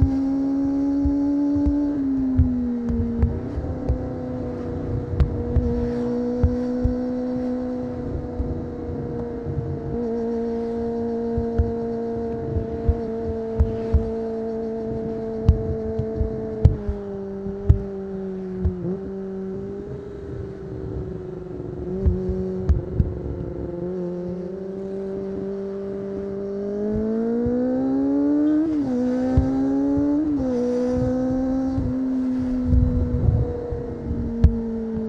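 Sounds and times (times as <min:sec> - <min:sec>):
motorcycle engine revving: 0:00.0 - 0:35.0
short low thumps: 0:01.0 - 0:04.4, 0:12.6 - 0:14.3, 0:15.4 - 0:18.0, 0:21.9 - 0:23.3, 0:31.1 - 0:34.8.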